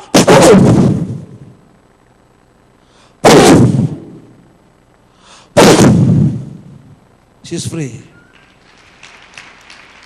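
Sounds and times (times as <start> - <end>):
distorted shout into microphone: 0.0 - 1.0.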